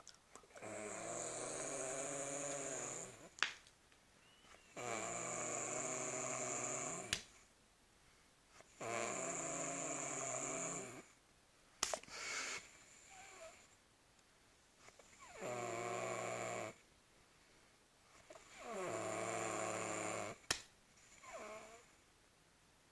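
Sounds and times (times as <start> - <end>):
person snoring: 0.5 - 3.3, 4.7 - 7.3, 8.8 - 11.1, 15.2 - 16.8, 18.3 - 20.4
soft breaths: 5.6 - 8.8, 11.9 - 15.4, 17.2 - 19.4.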